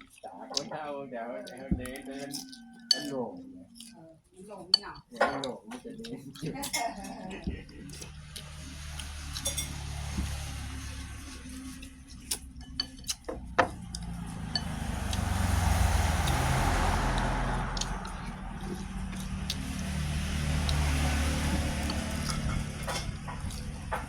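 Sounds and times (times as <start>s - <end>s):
road traffic passing: 8.0s - 24.0s.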